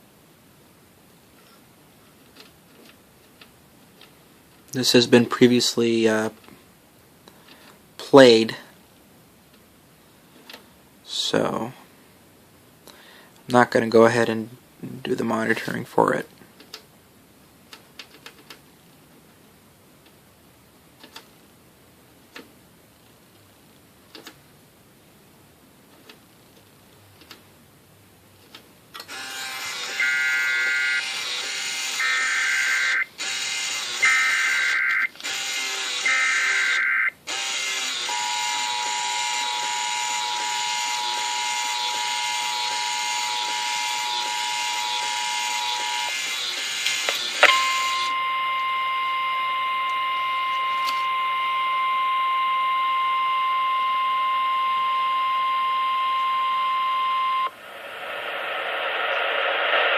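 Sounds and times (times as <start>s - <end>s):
background hiss: 0.0s - 33.3s, 41.0s - 59.9s
steady high alarm tone: 29.8s - 37.2s, 38.1s - 46.8s, 47.4s - 59.9s
chirping data bursts: 32.0s - 35.1s, 36.1s - 37.2s
two-tone attention signal: 47.4s - 57.6s.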